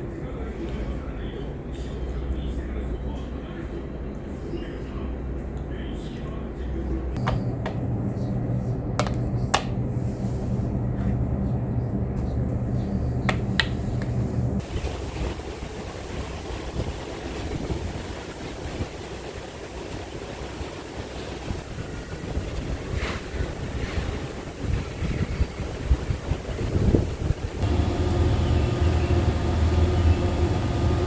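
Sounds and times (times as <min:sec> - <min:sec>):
low mechanical hum: 0:00.0 - 0:31.0
steady rushing noise: 0:11.8 - 0:31.0.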